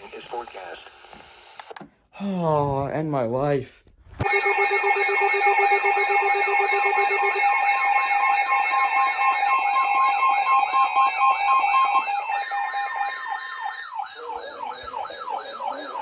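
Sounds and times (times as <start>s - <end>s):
beeping tone: 4.2s - 16.0s
high warbling tone: 4.2s - 16.0s
steady alert tone: 4.2s - 16.0s
sweeping alarm tones: 4.2s - 16.0s.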